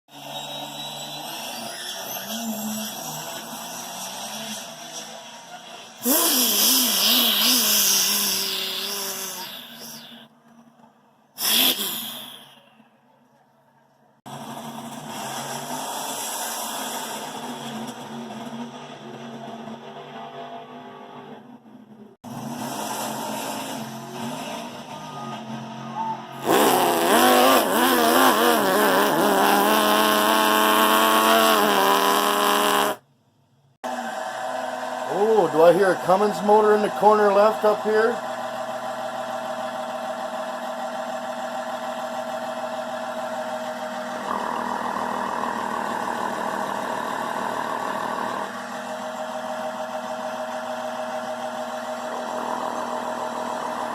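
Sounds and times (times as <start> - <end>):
person imitating revving engine: 6.0 - 10.3, 11.4 - 12.6, 26.1 - 33.0, 35.1 - 38.2, 44.2 - 48.6.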